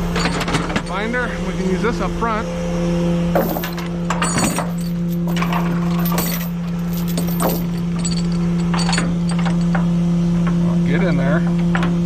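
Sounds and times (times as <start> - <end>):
chain clinking and rattling: 0.0 - 1.1, 3.4 - 9.9
steady low hum: 0.0 - 12.0.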